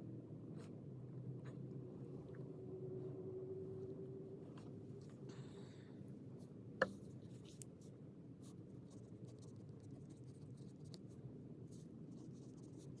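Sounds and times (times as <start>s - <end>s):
pencil scratching on paper: 8.9s - 11.1s, 11.7s - 13.0s.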